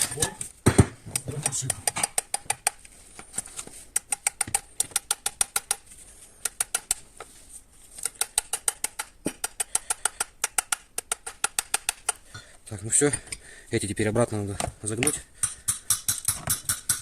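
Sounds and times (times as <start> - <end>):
sharp clicking taps: 1.2 - 2.9, 3.9 - 5.8, 6.4 - 7.0, 8.0 - 12.2.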